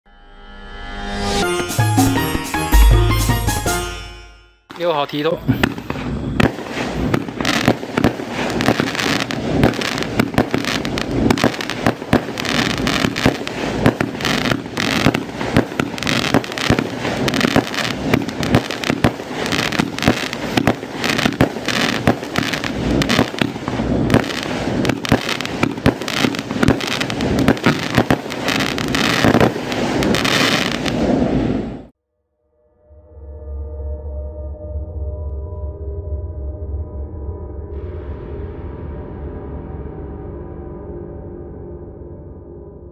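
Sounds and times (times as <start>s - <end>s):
firework shots and crackling bursts: 4.7s - 31.9s.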